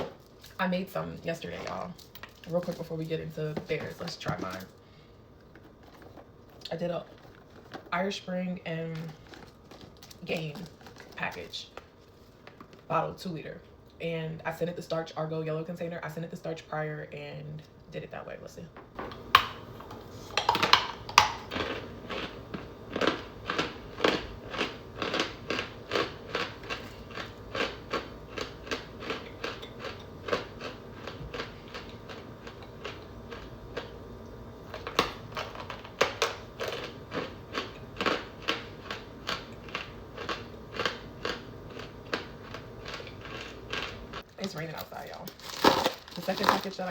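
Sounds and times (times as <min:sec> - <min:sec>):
cornstarch chips crunching: 0:08.9 - 0:11.9, 0:20.4 - 0:34.0, 0:34.7 - 0:46.9.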